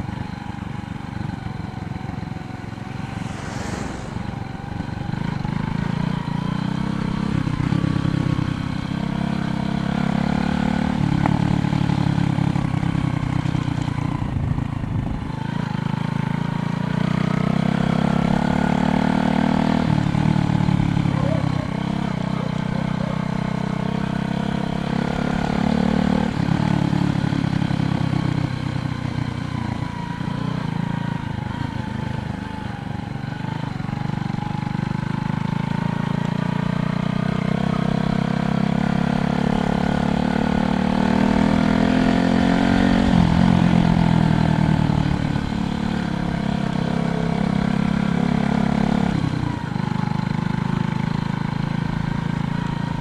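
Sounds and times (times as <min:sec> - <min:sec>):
road noise: 0:00.0 - 0:10.3, 0:11.0 - 0:53.0
vehicle engine passing: 0:01.6 - 0:06.7.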